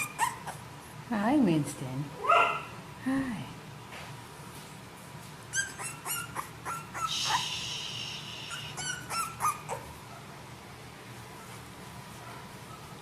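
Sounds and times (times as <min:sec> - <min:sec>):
puppy whimpering and yelping: 0:00.0 - 0:00.7, 0:05.5 - 0:07.4, 0:08.5 - 0:10.0.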